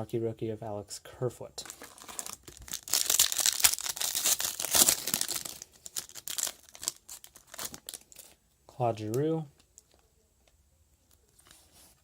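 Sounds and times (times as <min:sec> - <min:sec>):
foil wrapper crinkling: 0:01.6 - 0:08.4.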